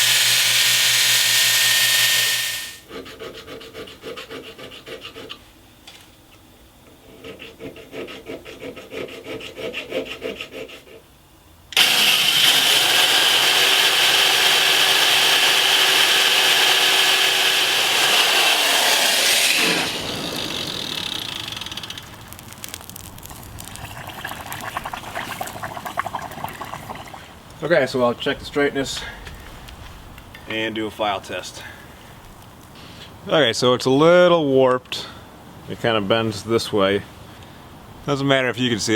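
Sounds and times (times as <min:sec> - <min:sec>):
file rasping on knife blade: 0:00.0 - 0:05.4, 0:07.0 - 0:11.0.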